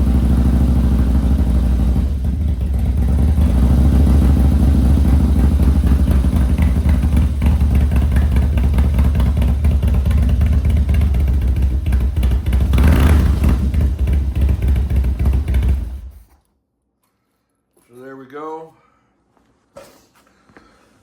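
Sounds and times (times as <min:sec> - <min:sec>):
motorcycle engine running: 0:00.0 - 0:16.2.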